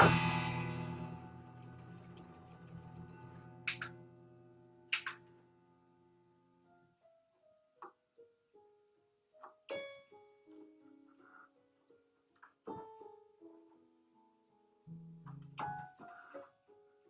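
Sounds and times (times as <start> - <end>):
sparse piano notes: 0.0 - 5.3.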